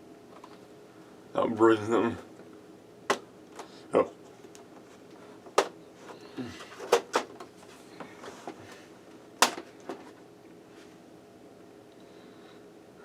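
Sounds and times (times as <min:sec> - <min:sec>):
plastic cover clicks and knocks: 0:03.1 - 0:03.7, 0:05.5 - 0:05.8, 0:06.8 - 0:07.5, 0:09.4 - 0:10.1.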